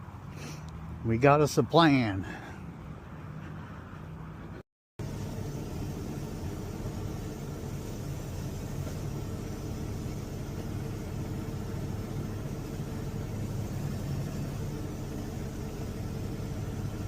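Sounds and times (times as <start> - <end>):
truck diesel engine idling: 5.0 - 17.0.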